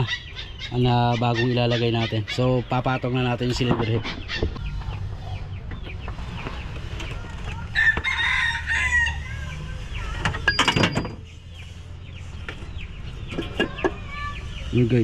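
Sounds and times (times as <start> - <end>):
chickens clucking: 0.0 - 15.0
rooster crowing: 7.7 - 9.6.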